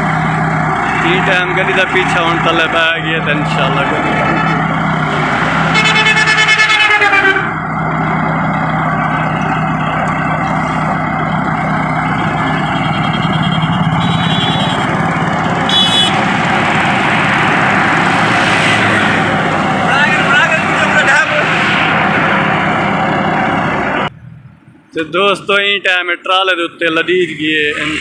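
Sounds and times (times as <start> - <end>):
heavy diesel engine running: 0.0 - 24.5
horn sounding: 3.7 - 7.6, 12.4 - 15.0, 15.6 - 16.3.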